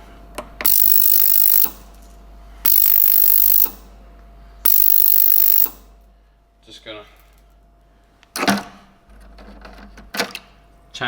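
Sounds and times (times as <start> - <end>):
ultrasonic cleaner buzzing hiss: 0.7 - 1.9, 2.7 - 3.9, 4.7 - 5.8.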